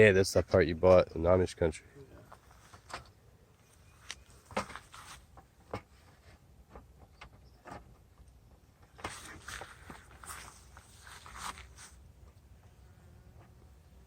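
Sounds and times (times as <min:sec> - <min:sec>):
rustling: 0:02.3 - 0:06.9, 0:08.9 - 0:12.0.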